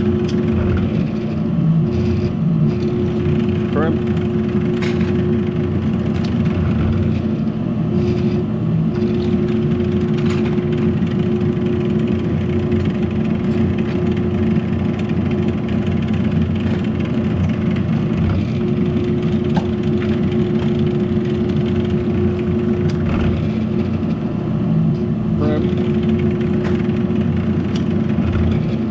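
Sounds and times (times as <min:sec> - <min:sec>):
steady machine hum: 0:00.0 - 0:28.9.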